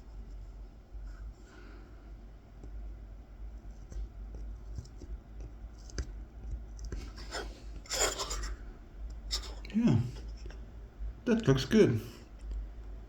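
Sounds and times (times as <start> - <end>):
knife scratching wood: 6.8 - 8.6.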